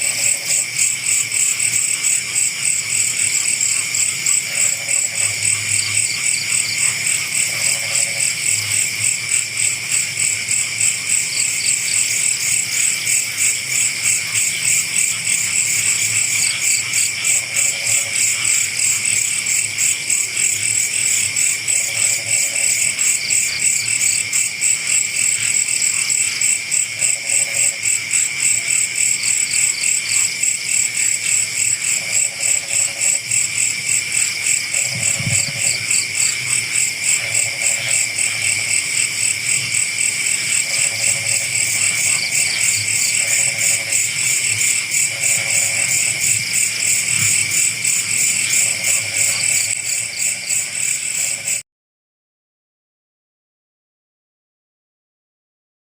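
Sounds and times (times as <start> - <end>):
crickets and insects trilling: 0.0 - 51.6
frog call: 31.4 - 51.6.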